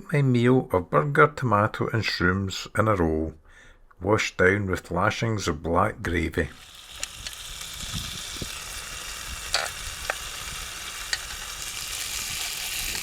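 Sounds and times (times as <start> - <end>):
burger and mushrooms sizzling: 6.5 - 13.0
sharp pops and crackles: 6.5 - 13.0.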